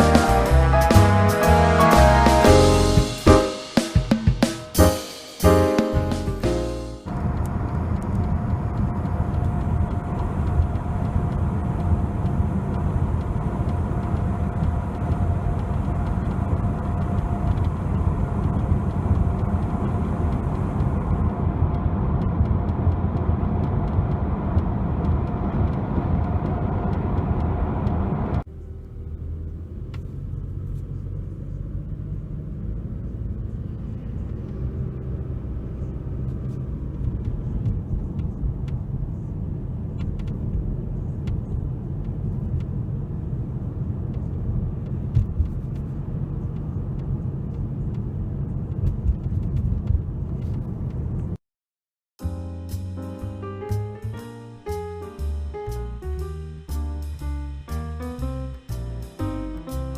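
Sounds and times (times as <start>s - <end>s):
car road noise from inside: 6.0s - 51.4s.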